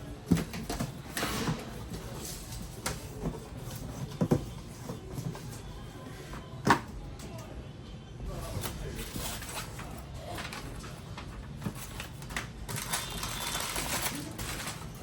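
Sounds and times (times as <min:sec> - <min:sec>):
packaging rustling: 0:11.6 - 0:15.0.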